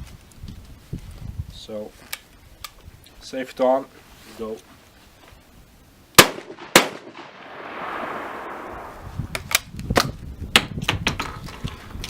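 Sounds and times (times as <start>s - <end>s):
shotgun shots: 6.2s - 9.3s.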